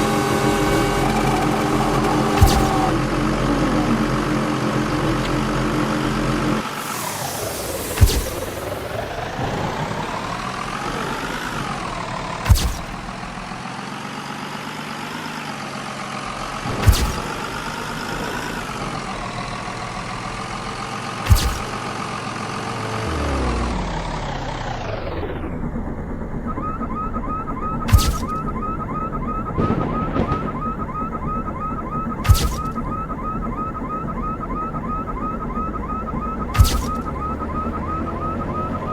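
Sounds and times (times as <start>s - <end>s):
vehicle engine running: 0.0s - 38.9s
sharp thump: 2.4s - 2.9s, 7.9s - 8.6s, 12.4s - 13.3s, 16.7s - 17.5s, 21.2s - 21.9s, 27.9s - 28.5s, 32.2s - 33.0s, 36.5s - 37.2s.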